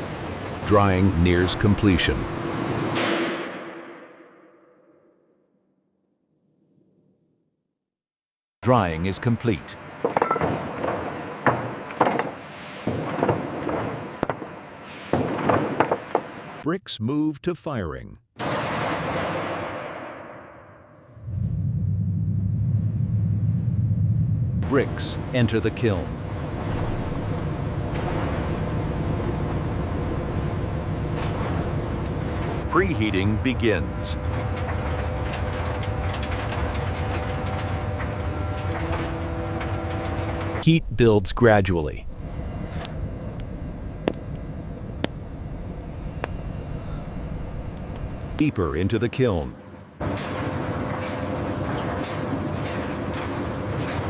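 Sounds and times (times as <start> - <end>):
industrial background noise: 0.0 - 4.0, 8.6 - 16.8, 24.6 - 54.0
irregular knocks and clattering: 10.0 - 14.5, 34.2 - 40.6
faint hum: 20.8 - 50.0.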